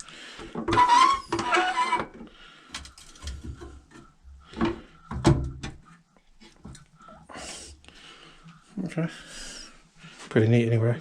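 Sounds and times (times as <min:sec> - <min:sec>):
door creaking on squeaky hinge: 0:00.7 - 0:02.2.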